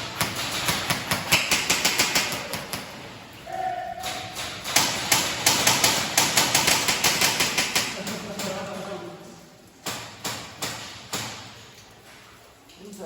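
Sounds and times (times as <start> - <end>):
airsoft guns firing: 0.0 - 3.0, 4.0 - 8.2.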